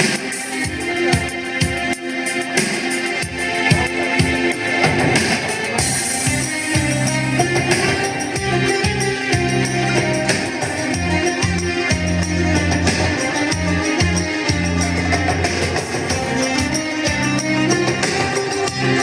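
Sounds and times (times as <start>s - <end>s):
sharp percussion strikes: 0.0s - 19.0s
bass line: 5.8s - 18.0s.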